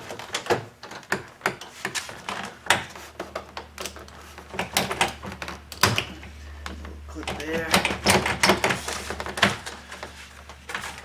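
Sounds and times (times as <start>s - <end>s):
plastic trim panel clicking and rattling: 0.0s - 11.0s.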